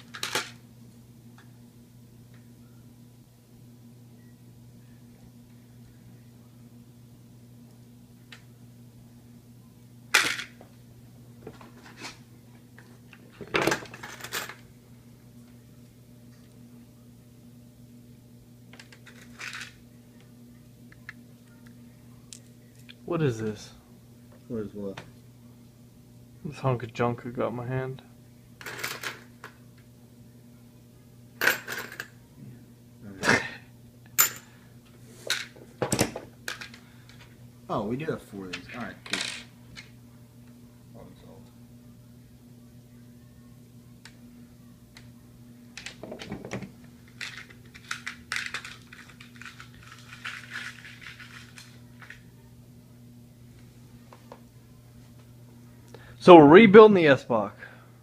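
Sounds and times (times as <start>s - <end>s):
steady low hum: 0.0s - 58.0s
small hard parts clattering: 45.8s - 52.2s.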